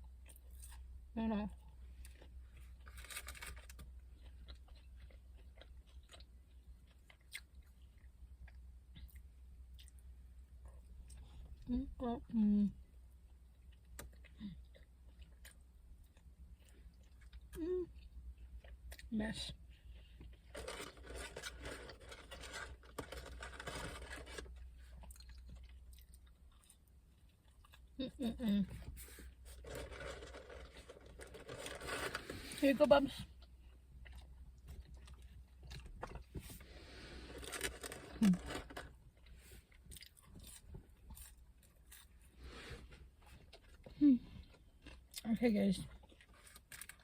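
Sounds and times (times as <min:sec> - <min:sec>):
low steady hum: 0:00.0 - 0:47.0
person chewing food: 0:01.6 - 0:11.7, 0:13.0 - 0:28.0, 0:33.2 - 0:45.3, 0:45.9 - 0:47.0.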